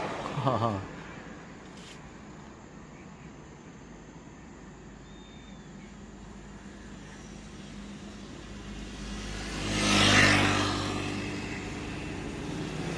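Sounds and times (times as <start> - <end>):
motor vehicle passing: 0.0 - 1.5, 6.6 - 12.9.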